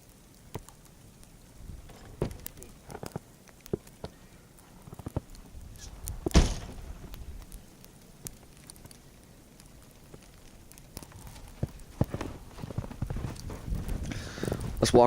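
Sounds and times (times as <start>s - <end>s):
heavy thump: 6.2s - 7.0s
footsteps crunching in snow: 10.1s - 15.0s.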